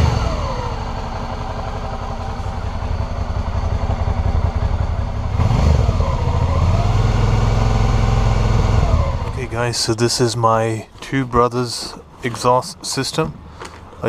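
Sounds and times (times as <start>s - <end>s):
motorcycle engine revving: 0.0s - 9.6s.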